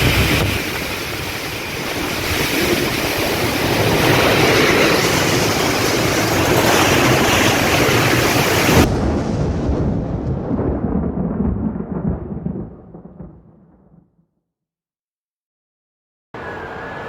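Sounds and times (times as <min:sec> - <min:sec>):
wind buffeting microphone: 0:00.0 - 0:12.2
strong wind gusting: 0:00.0 - 0:12.6.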